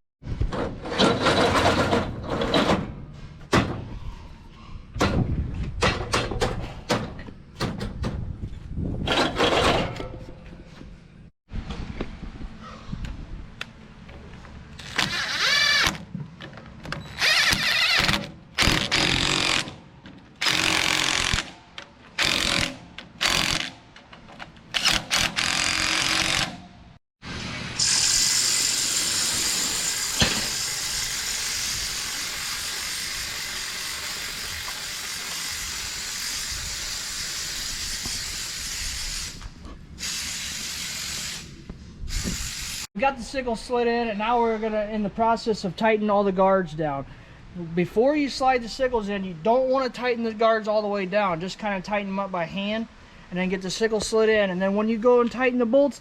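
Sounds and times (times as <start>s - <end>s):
power drill whining in bursts: 14.8s - 16.0s, 17.0s - 19.7s, 24.8s - 26.6s.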